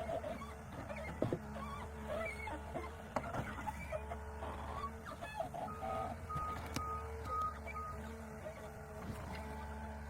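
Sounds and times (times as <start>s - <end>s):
diesel engine hum: 0.0s - 10.0s
reversing alarm beeping: 5.6s - 8.0s.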